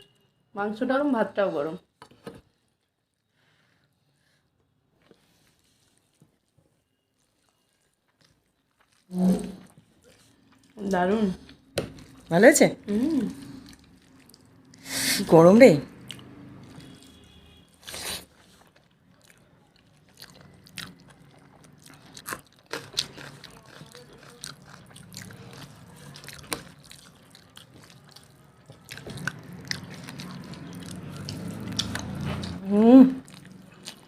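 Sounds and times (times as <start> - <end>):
chewing and biting food: 7.2 - 12.3, 13.2 - 14.8, 15.9 - 34.0.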